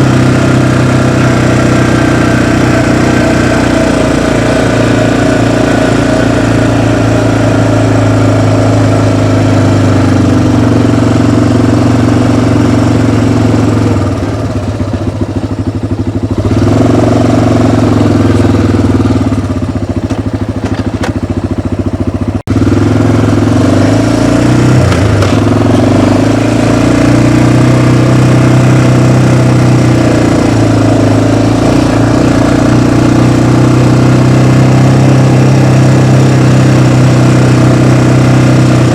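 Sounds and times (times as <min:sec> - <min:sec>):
off-road vehicle engine running: 0:00.0 - 0:38.9.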